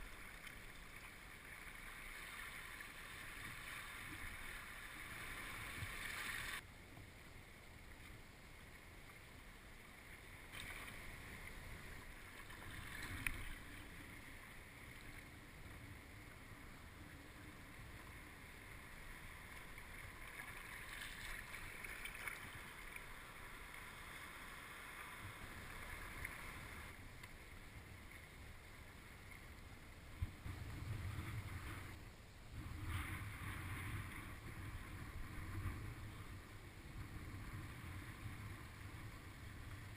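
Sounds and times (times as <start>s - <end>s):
wind rumble on microphone: 30.1s - 39.9s.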